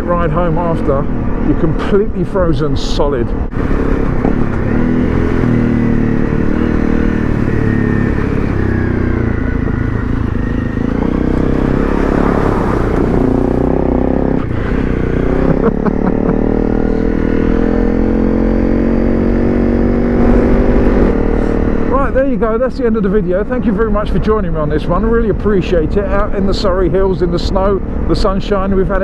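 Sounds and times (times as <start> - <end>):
motorcycle engine revving: 3.4 - 22.2.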